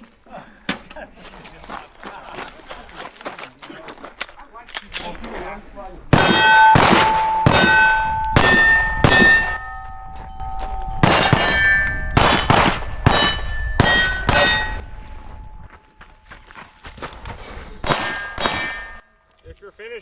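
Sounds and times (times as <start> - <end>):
pistol shots: 6.1 - 9.7, 11.0 - 14.8, 17.8 - 19.0
steel plate ringing: 6.1 - 15.7, 17.8 - 19.1.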